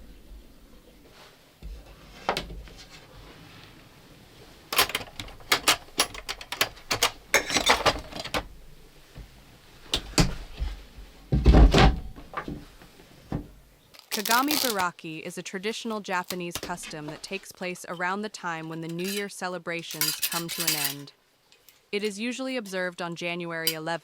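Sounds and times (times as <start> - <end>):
clicks and clatter of objects handled: 4.7 - 8.5, 13.9 - 14.9, 19.9 - 21.8.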